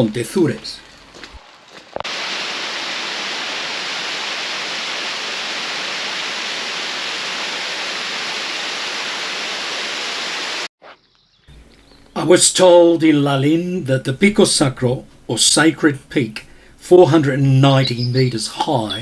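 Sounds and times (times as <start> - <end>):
rush of flowing water: 2.0 - 10.7.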